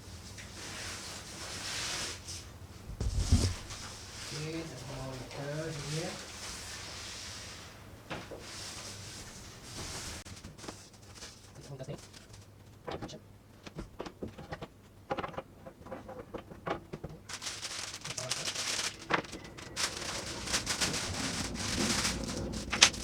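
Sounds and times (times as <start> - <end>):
packaging crinkling rustle: 10.2 - 12.6, 17.1 - 23.0.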